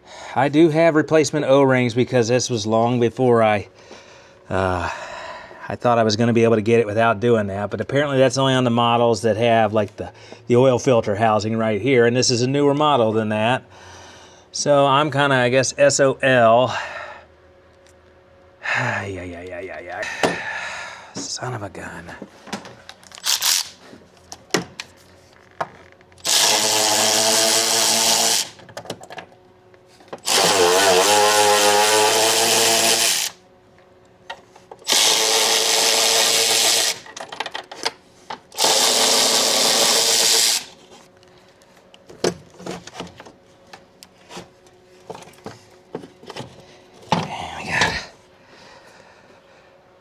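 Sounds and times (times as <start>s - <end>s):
power tool motor whine: 23.2s - 23.8s, 26.2s - 28.6s, 30.2s - 33.4s, 34.8s - 37.1s, 38.5s - 40.9s.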